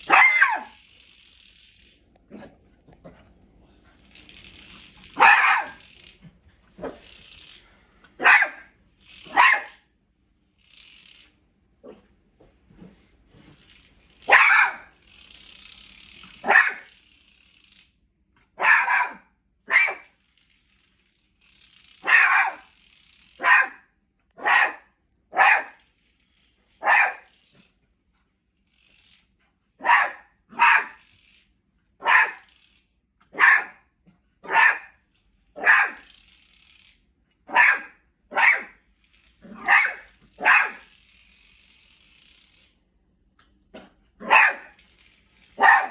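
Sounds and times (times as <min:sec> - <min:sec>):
puppy barking: 0:00.0 - 0:00.8, 0:05.1 - 0:05.9, 0:08.2 - 0:09.8, 0:14.3 - 0:15.0, 0:16.4 - 0:16.9, 0:18.6 - 0:20.1, 0:22.0 - 0:22.7, 0:23.4 - 0:25.8, 0:26.8 - 0:27.3, 0:29.8 - 0:31.0, 0:32.0 - 0:32.5, 0:33.3 - 0:35.0, 0:35.6 - 0:36.1, 0:37.5 - 0:38.8, 0:39.4 - 0:40.9, 0:43.8 - 0:44.8, 0:45.6 - 0:45.9.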